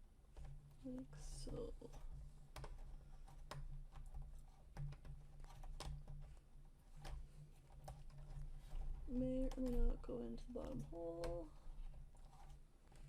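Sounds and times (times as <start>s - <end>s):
light clicks and taps: 0.3s - 13.0s
low steady hum: 6.4s - 13.0s.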